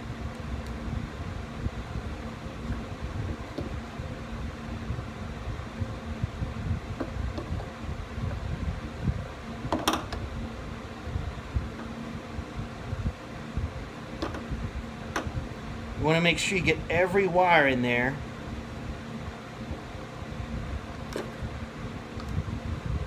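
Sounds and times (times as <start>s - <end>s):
fan-like machine hum: 0.0s - 23.0s.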